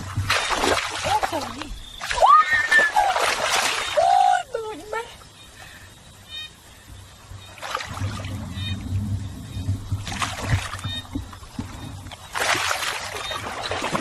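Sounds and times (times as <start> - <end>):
water splashing and sloshing: 0.0 - 5.8, 6.7 - 14.0
low rumble: 7.9 - 12.2.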